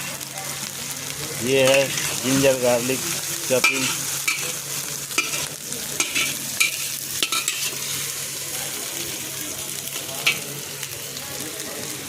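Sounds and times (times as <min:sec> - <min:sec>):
garlic sizzling in hot oil: 0:00.0 - 0:12.0
utensil scraping pan: 0:01.7 - 0:02.5, 0:05.2 - 0:08.1.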